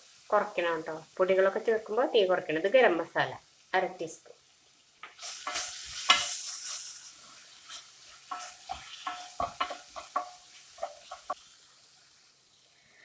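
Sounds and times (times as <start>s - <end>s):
food sizzling in a pan: 0.0s - 13.0s
spoon scraping a pan: 5.0s - 11.6s.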